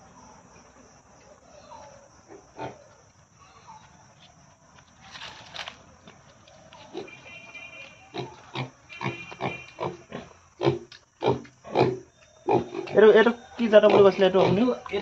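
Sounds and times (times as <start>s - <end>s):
pigs grunting: 1.4s - 3.0s, 8.1s - 15.0s.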